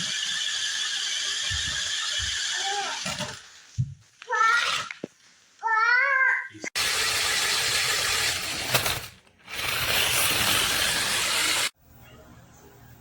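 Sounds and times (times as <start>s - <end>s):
toy car electric motors whirring: 0.0s - 3.7s, 6.8s - 11.8s.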